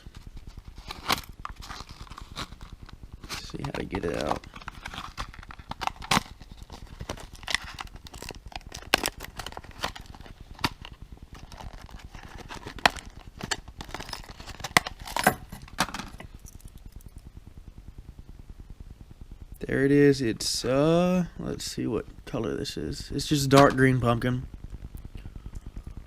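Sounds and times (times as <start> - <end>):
packaging tearing and crinkling: 0.1 - 17.2.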